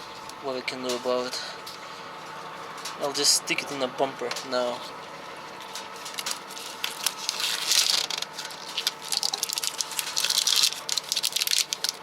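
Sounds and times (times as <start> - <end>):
hands rustling and scraping wire: 5.6 - 12.0.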